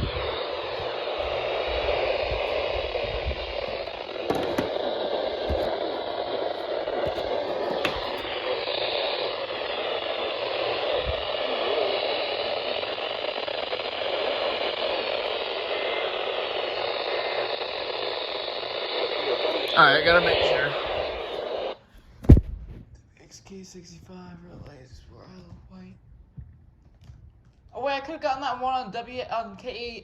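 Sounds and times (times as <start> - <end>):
radio static hiss: 0.0 - 21.8.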